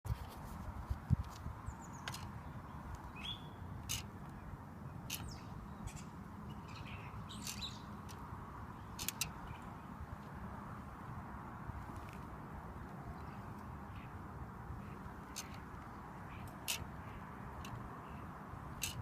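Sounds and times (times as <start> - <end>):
bicycle spokes ticking: 3.8 - 4.4, 5.0 - 5.4, 7.3 - 9.6, 14.8 - 19.0.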